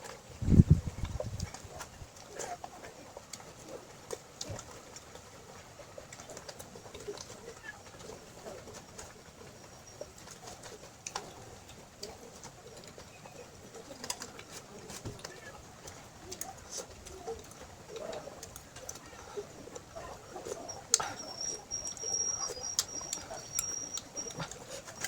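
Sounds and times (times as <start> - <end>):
wet chewing clicks and smacks: 10.0 - 25.0.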